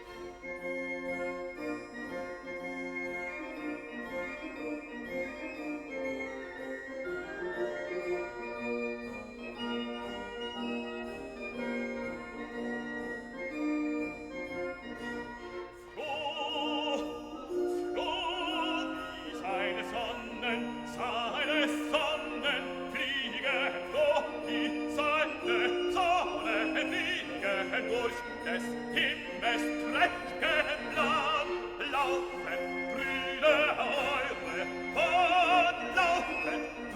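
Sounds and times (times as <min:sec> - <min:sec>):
keyboard and orchestra music: 0:00.0 - 0:36.9
operatic voice singing: 0:15.9 - 0:36.9.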